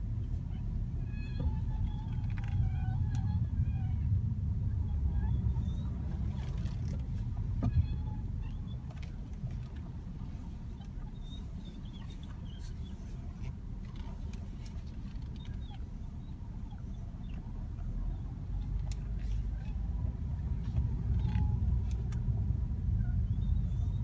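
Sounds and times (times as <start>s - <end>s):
car low rumble: 0.0s - 24.0s
steering squeaking: 0.1s - 24.0s.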